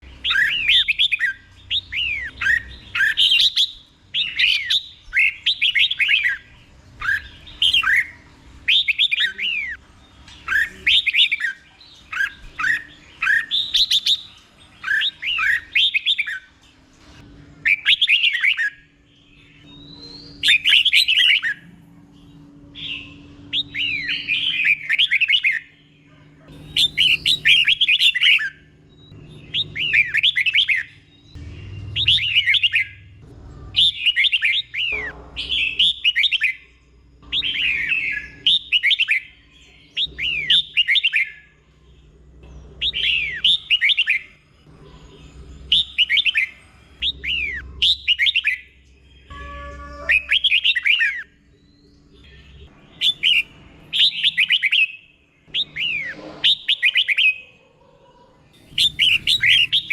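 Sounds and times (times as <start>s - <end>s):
bird singing whistled notes: 0.0s - 16.6s, 17.6s - 33.1s, 33.7s - 41.6s, 42.5s - 57.4s, 58.6s - 59.9s
faint low hum: 6.0s - 48.1s.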